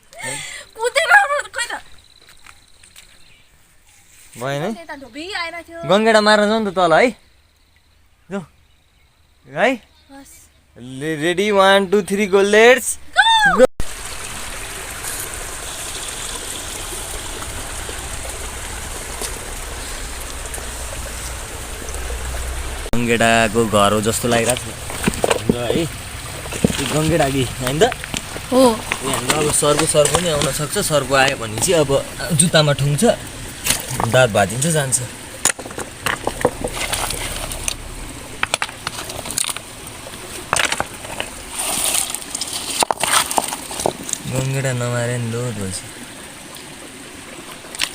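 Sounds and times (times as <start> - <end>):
stream water flowing: 11.4 - 47.9
low rumble: 14.0 - 29.0, 35.1 - 41.6
knocks and clicks among stones: 24.6 - 25.8, 26.4 - 27.2, 35.4 - 37.8, 38.4 - 39.7, 40.3 - 44.2.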